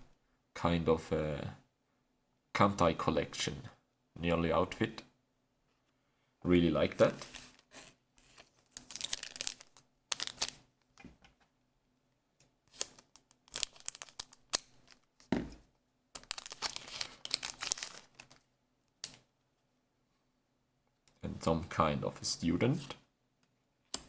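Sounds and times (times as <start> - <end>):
foil wrapper crinkling: 8.7 - 10.6, 12.7 - 15.1, 16.2 - 18.4.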